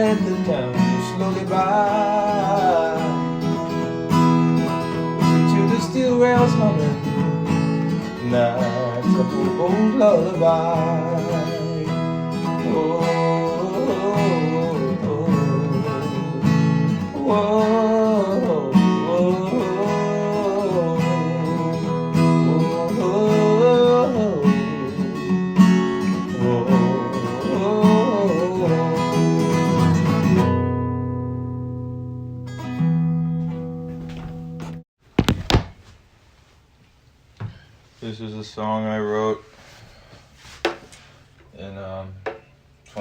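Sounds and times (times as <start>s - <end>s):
person singing wordless melody: 0.0s - 3.7s, 5.3s - 7.2s, 8.1s - 29.8s
acoustic guitar strumming: 0.0s - 35.5s.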